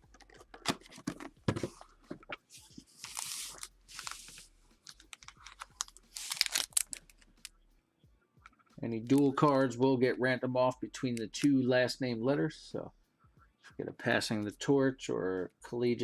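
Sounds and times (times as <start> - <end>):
foil wrappers crinkling: 2.9 - 7.2.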